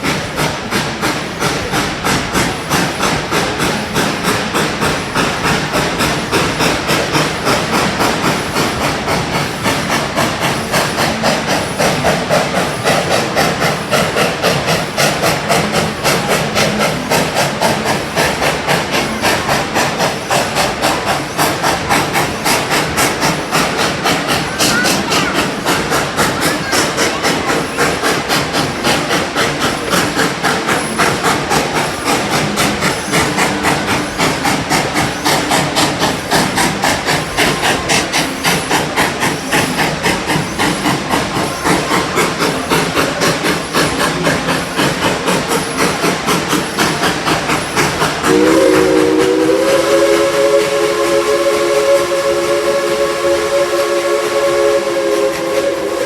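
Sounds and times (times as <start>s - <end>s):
steam locomotive exhaust chuffs: 0.0s - 56.0s
steam whistle: 48.2s - 56.0s.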